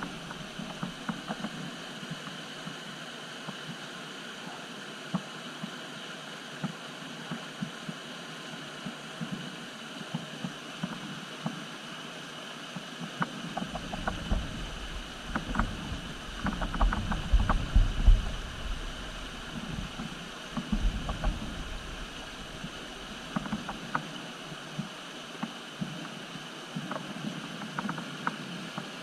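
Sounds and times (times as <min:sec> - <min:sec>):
tyres clicking and knocking on rock: 0:13.6 - 0:22.7
low rumbles: 0:13.8 - 0:23.7.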